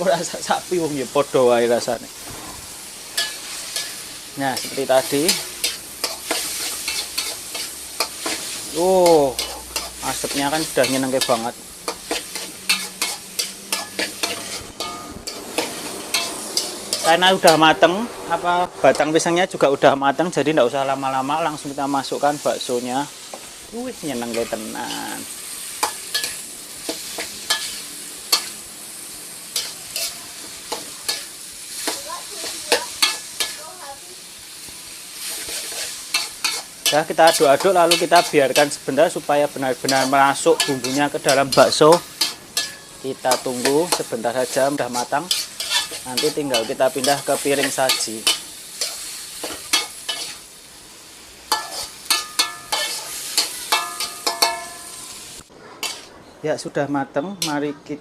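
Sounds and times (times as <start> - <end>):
stir-fry sizzling in a pan: 0.0 - 58.0
spatula scraping and knocking pan: 39.8 - 50.4, 51.5 - 55.0, 55.8 - 56.1.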